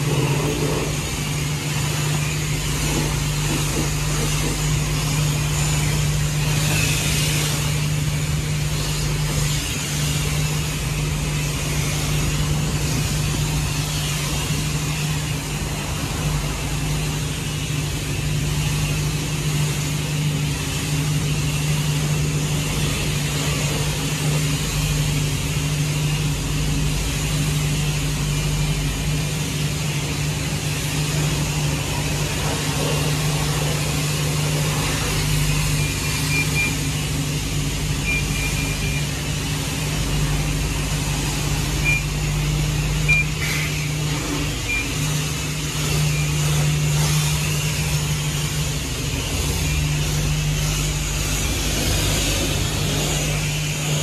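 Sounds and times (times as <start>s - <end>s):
steady motor hum: 0.0s - 54.0s
short high beeps: 35.8s - 36.9s, 38.0s - 39.2s, 41.8s - 42.2s, 43.0s - 44.0s, 44.6s - 45.0s.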